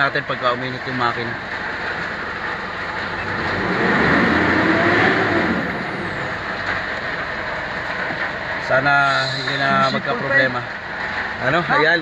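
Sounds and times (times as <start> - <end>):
car engine revving: 0.4 - 12.0.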